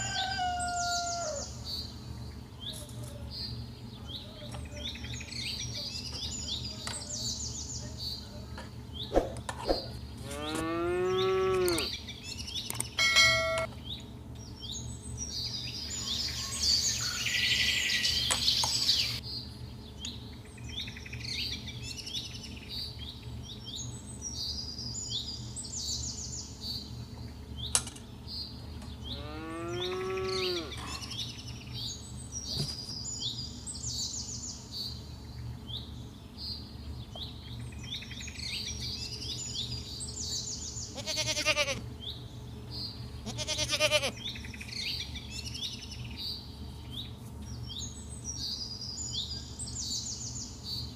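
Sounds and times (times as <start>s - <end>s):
small birds chirping: 1.1s - 13.0s, 13.6s - 50.9s
farm animal calling: 10.2s - 12.0s, 13.2s - 13.7s, 29.1s - 31.2s, 40.8s - 41.9s, 43.2s - 44.4s.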